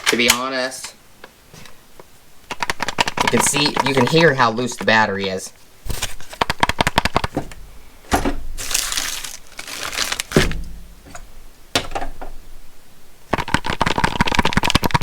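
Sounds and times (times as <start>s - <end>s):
battery pack rattling in tool: 2.5s - 4.5s, 8.6s - 10.6s.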